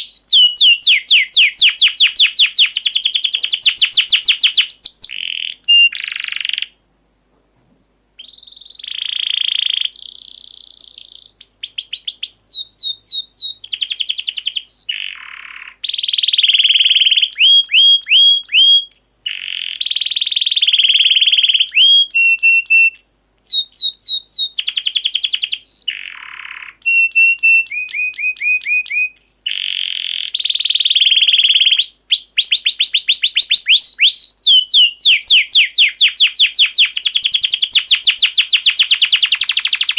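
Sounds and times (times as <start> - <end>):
birds trilling and whistling: 8.2 - 32.7.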